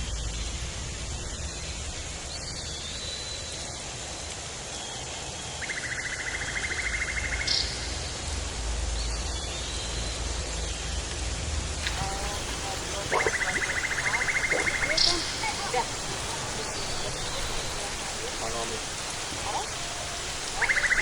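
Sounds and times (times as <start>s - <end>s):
high bird whistles: 11.8s - 21.0s
high chirp: 11.8s - 21.0s
steady hiss: 11.8s - 21.0s.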